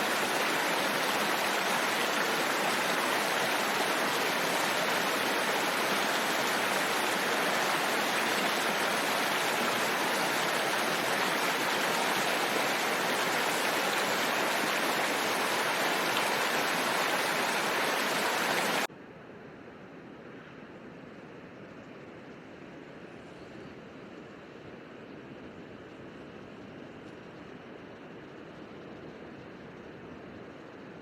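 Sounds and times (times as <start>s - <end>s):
rushing water: 0.0s - 18.9s
thin steady noise: 0.0s - 18.9s.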